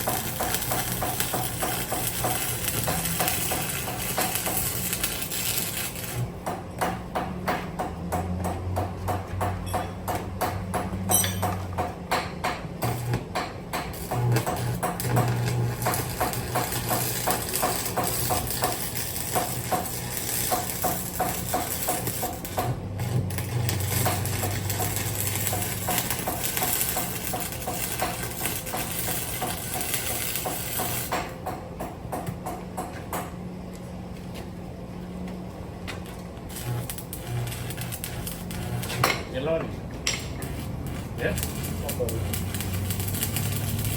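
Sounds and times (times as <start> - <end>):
sizzling hiss: 41.2 - 43.9.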